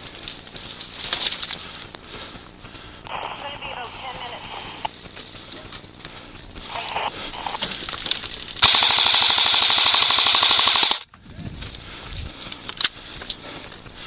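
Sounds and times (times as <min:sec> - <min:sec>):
airsoft gun full-auto burst: 0:08.6 - 0:11.0.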